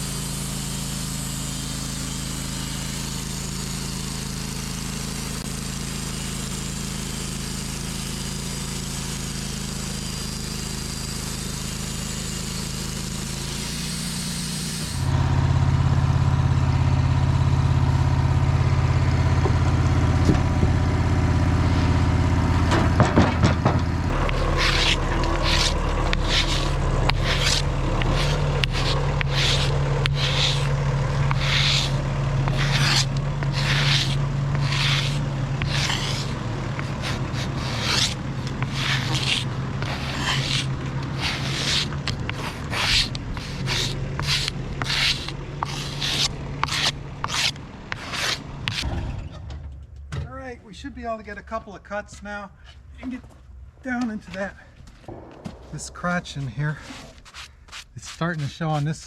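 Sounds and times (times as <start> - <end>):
sawmill engine running: 0.0 - 49.1
short scraping strokes: 24.0 - 48.9, 55.6 - 59.0
knocks: 55.0 - 57.2.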